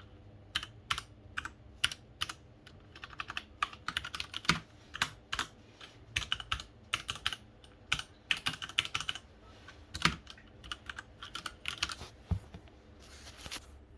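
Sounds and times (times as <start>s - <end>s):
mechanical keyboard typing: 0.0s - 5.5s, 6.1s - 9.2s, 9.9s - 12.0s.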